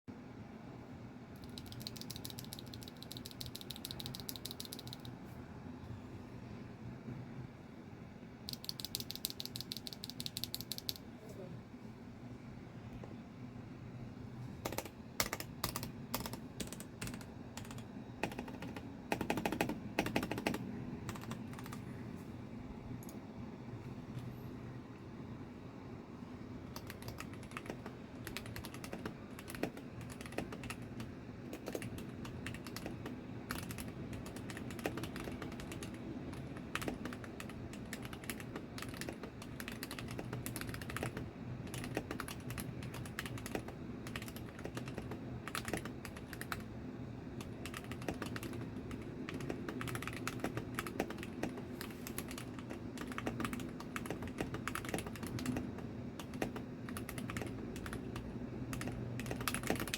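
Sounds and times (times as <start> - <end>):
fast mechanical keyboard typing: 1.4 - 5.2, 8.5 - 11.1, 14.6 - 21.9, 26.6 - 59.9.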